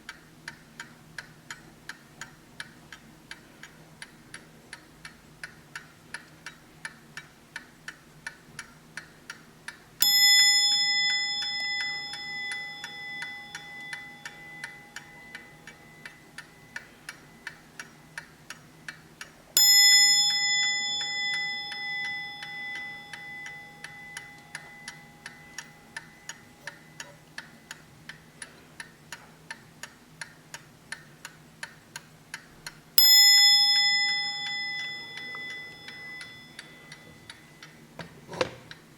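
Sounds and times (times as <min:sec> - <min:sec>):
clock ticking: 0:00.0 - 0:38.0
clock bell striking: 0:10.0 - 0:17.4, 0:19.6 - 0:27.3, 0:33.0 - 0:37.7.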